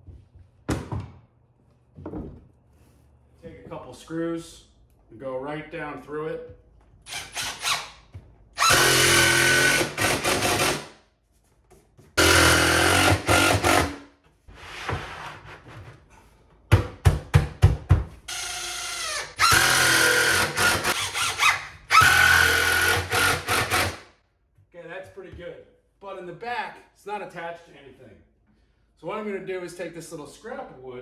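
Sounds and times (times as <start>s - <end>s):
power drill driving screws: 7.1s - 8.0s, 8.6s - 10.9s, 12.2s - 14.0s, 18.3s - 24.0s.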